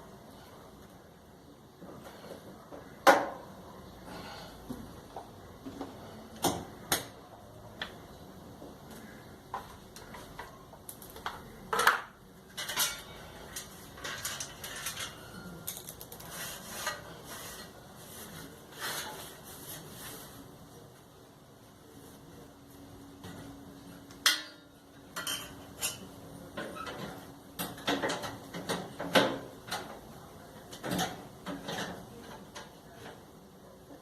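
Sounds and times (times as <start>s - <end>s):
tools and metal parts clinking: 10.4s - 17.0s.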